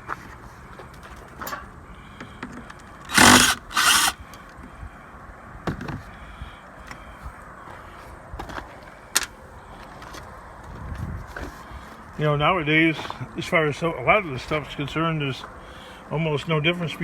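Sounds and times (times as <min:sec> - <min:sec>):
power tool bursts: 0:03.1 - 0:04.2.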